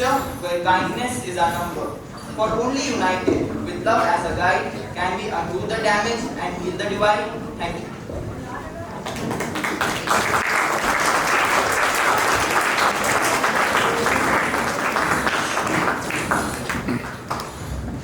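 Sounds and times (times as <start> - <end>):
audience clapping: 9.0 - 17.9.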